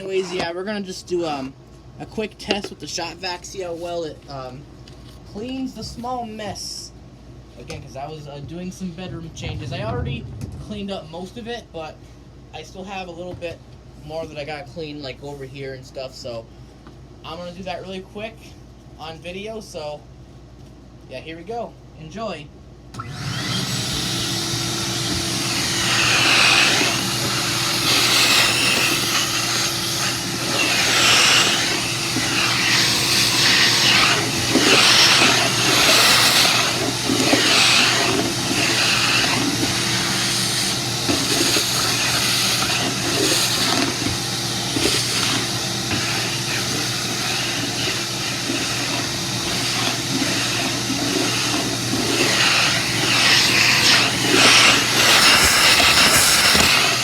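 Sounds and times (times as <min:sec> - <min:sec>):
shop vacuum running: 0:00.0 - 0:01.5, 0:07.6 - 0:11.9, 0:22.9 - 0:57.0.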